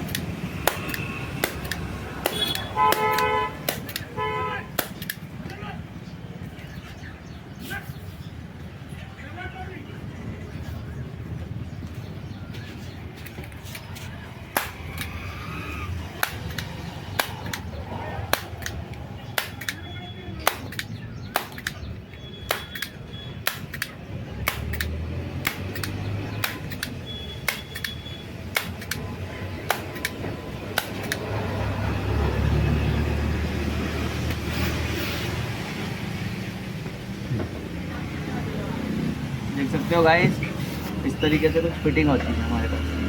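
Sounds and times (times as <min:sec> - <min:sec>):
hand tools clicking on metal: 0:00.0 - 0:04.1, 0:16.2 - 0:17.7, 0:22.5 - 0:31.3.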